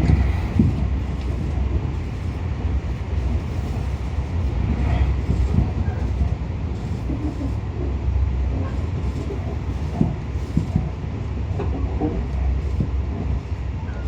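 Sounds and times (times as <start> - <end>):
train rumbling: 0.0 - 14.0.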